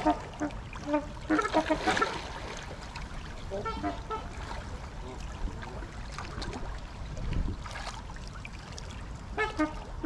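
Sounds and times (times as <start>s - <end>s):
soft water splashing: 0.0s - 10.0s
low wind rumble: 2.2s - 10.0s
swans and geese calling: 3.5s - 4.4s.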